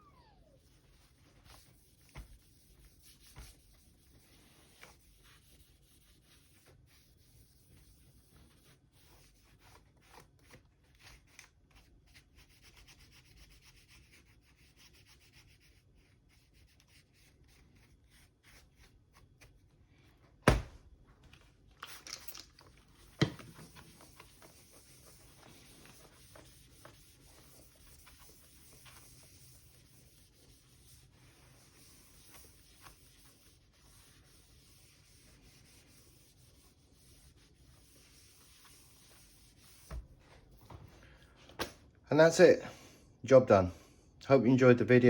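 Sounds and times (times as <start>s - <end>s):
cloth rubbing laptop casing: 0.1s - 11.5s, 22.8s - 40.8s.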